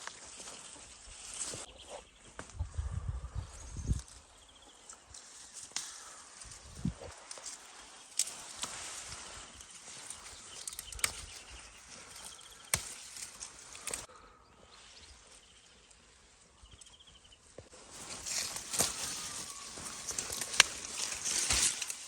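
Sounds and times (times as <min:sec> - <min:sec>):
rustling of plants: 0:00.0 - 0:14.1, 0:14.7 - 0:22.0
stems snapping: 0:04.8 - 0:14.1, 0:18.0 - 0:22.0.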